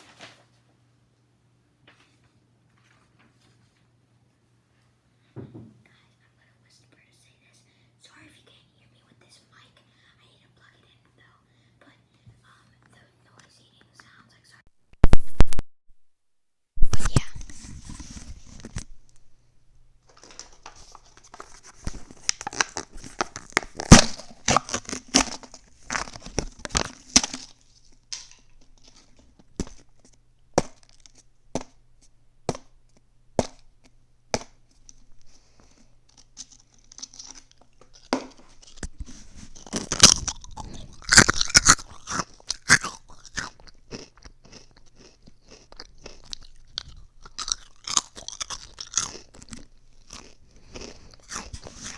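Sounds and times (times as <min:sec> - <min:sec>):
person crunching food: 0:16.8 - 0:19.3, 0:20.1 - 0:51.9.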